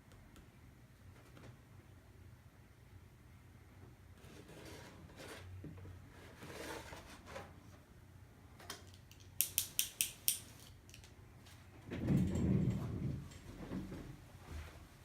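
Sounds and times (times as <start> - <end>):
sharp clicks: 9.1 - 11.2.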